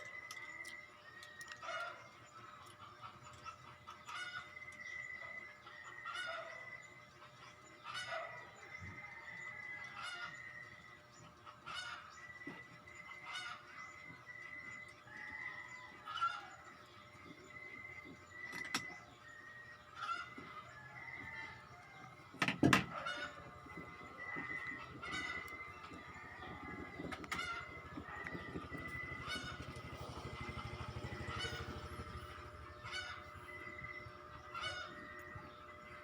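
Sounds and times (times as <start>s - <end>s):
poultry calling: 1.5s - 36.0s
high-pitched whine: 22.4s - 36.0s.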